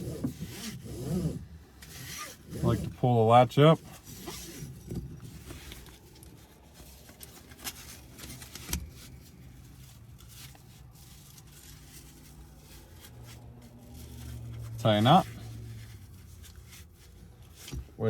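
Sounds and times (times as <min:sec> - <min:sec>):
seatbelt rustling: 0:00.0 - 0:18.0.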